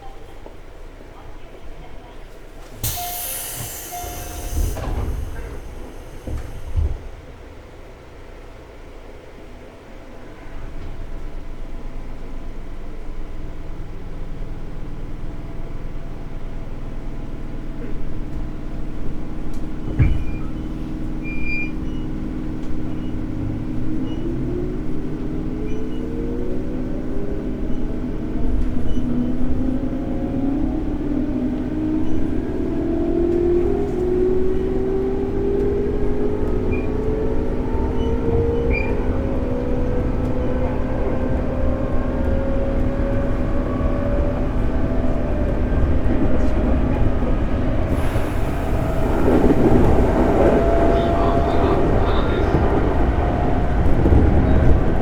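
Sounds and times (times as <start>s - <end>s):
wheels rumbling on rail: 0.0s - 55.0s
electric train motor whine: 47.9s - 54.7s.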